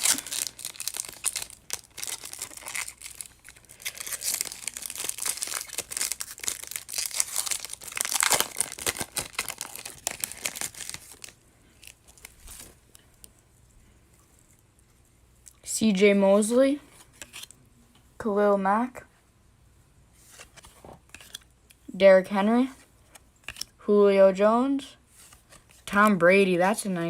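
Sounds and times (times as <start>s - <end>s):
wrapper torn and crinkled: 0.0s - 12.7s.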